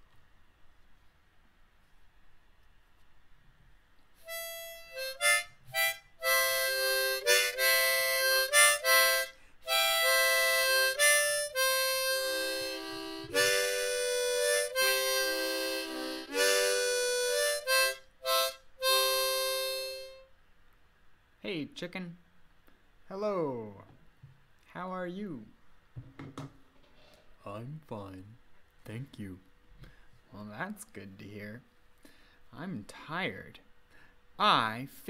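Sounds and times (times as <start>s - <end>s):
solo instrumental melody: 4.2s - 20.3s.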